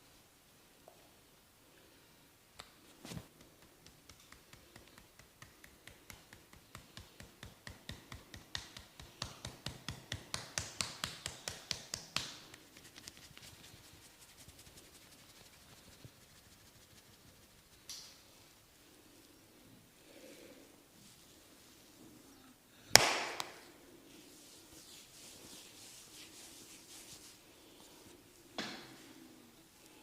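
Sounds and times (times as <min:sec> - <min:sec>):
rhythmic massage tapping: 0:03.3 - 0:18.1.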